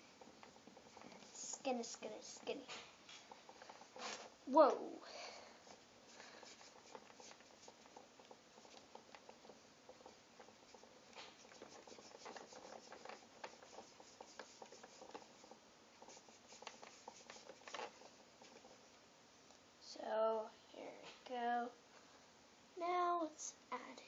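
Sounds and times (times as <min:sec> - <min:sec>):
hands tapping and scraping dough: 0:05.6 - 0:18.8.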